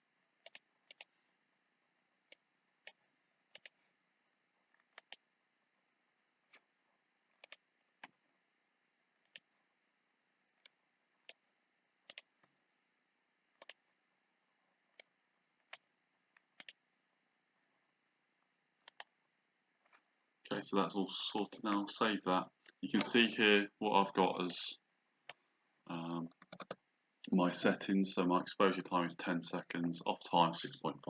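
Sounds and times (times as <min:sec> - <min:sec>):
computer mouse clicks: 0:00.4 - 0:01.1, 0:02.3 - 0:03.8, 0:04.7 - 0:05.3, 0:07.3 - 0:08.2, 0:09.2 - 0:09.5, 0:12.0 - 0:12.5, 0:13.6 - 0:13.9, 0:14.9 - 0:16.8, 0:18.8 - 0:19.1, 0:26.3 - 0:26.8.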